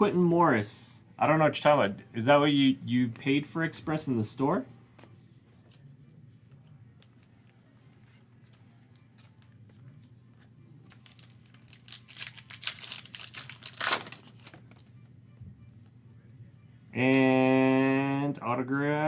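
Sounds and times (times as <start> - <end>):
wrapper crinkling and tearing: 10.8 - 14.9.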